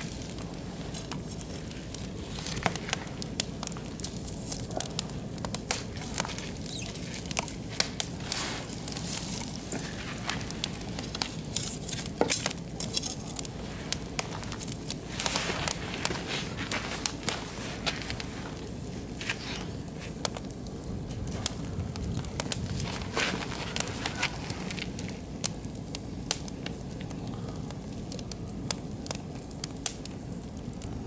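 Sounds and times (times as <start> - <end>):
low steady hiss: 0.0 - 31.0
wood fire crackling: 0.0 - 31.0
sharp pops: 0.3 - 20.5.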